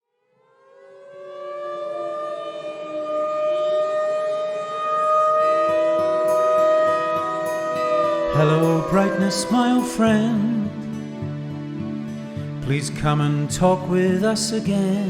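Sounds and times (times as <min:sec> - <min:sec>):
lower siren tone sliding down: 0:00.1 - 0:11.0
air-raid siren wailing: 0:00.1 - 0:12.1.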